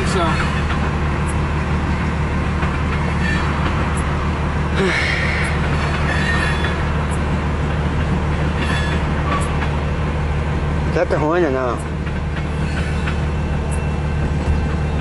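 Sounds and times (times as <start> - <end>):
freight train rolling: 0.0 - 15.0
high wheel squeals: 3.0 - 4.2, 4.9 - 7.2, 8.5 - 9.6, 12.4 - 15.0.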